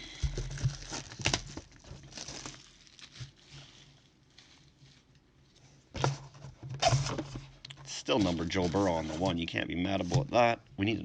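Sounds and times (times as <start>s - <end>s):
plastic wrapping crinkling and tearing: 0.2s - 5.2s
faint handling noise: 0.2s - 11.0s.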